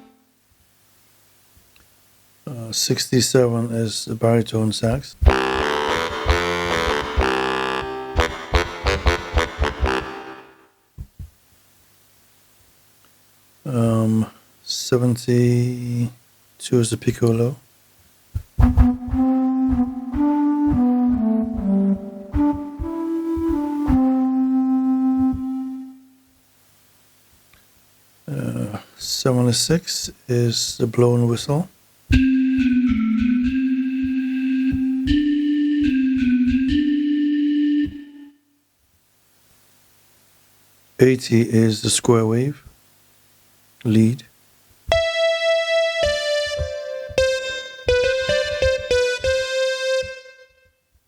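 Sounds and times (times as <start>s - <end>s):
synthesized piccolo notes: 5.3s - 10.6s, 18.6s - 26.1s, 32.1s - 38.4s, 44.9s - 50.6s
faint low knocks: 18.3s - 24.0s.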